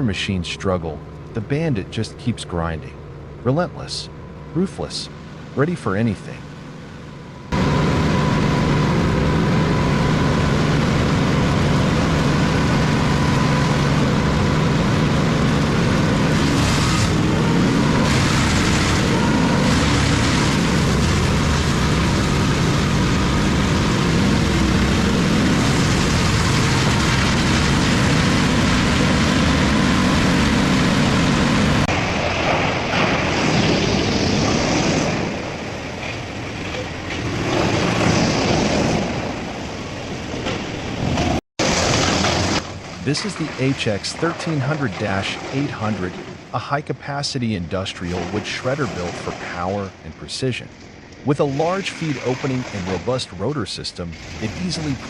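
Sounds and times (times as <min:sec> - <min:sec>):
wavering machine noise: 0:00.0 - 0:55.0
wood chipper running: 0:07.5 - 0:39.4.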